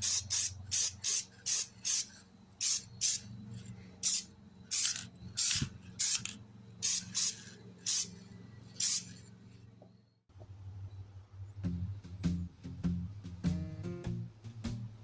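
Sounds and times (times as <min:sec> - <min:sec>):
aerosol spray hissing: 0:00.0 - 0:03.3, 0:04.0 - 0:08.2, 0:08.8 - 0:09.1
music: 0:11.4 - 0:15.0.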